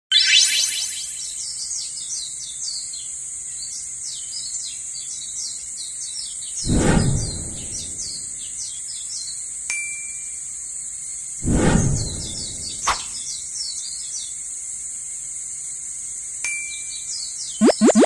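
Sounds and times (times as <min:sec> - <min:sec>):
loud brief noise: 0:06.6 - 0:08.4, 0:11.4 - 0:13.0.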